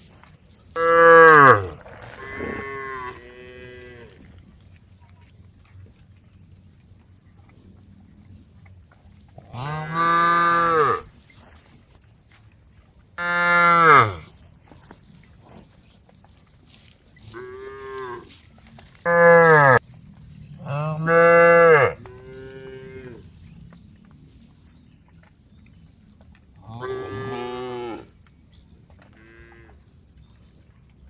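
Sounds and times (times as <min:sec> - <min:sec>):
cows mooing: 0:00.8 - 0:04.4, 0:09.4 - 0:11.2, 0:13.2 - 0:14.3, 0:19.0 - 0:19.8, 0:20.4 - 0:23.3, 0:26.6 - 0:28.1, 0:29.2 - 0:29.8.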